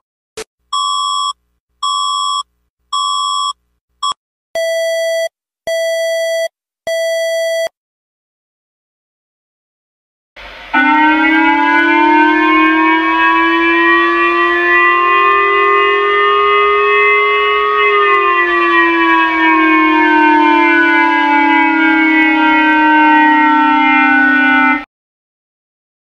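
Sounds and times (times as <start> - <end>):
siren wail rising and falling: 10.4 - 24.9.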